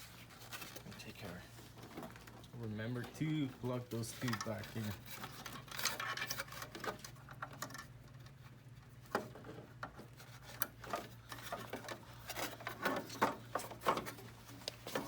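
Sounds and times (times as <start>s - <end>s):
cable connectors clicking and rattling: 4.1s - 8.3s.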